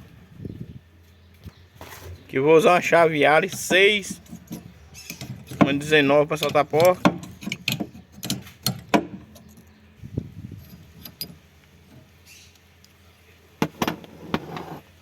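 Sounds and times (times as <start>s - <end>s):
metal tools clinking: 2.9s - 9.8s, 10.5s - 12.1s.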